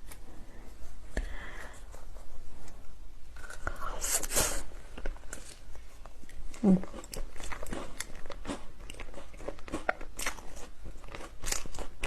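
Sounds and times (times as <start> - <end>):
slurping hiss: 3.9 - 4.7.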